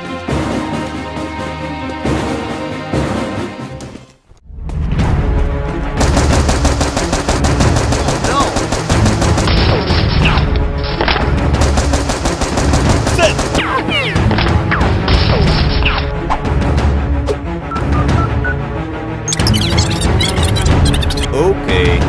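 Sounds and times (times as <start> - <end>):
action background music: 0.0 - 22.0
rapid automatic gunfire: 6.0 - 10.3, 11.4 - 13.6.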